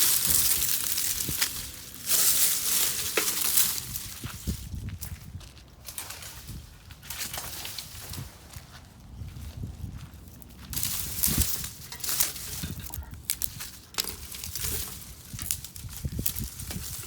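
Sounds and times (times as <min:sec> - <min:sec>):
wooden branches snapping: 0:00.0 - 0:04.3, 0:10.7 - 0:12.6, 0:13.2 - 0:17.0.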